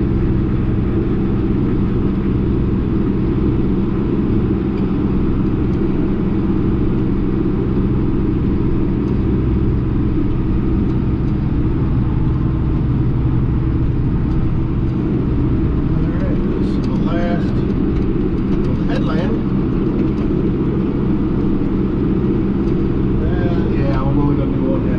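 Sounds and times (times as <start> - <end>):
tractor diesel engine droning: 0.0 - 24.9.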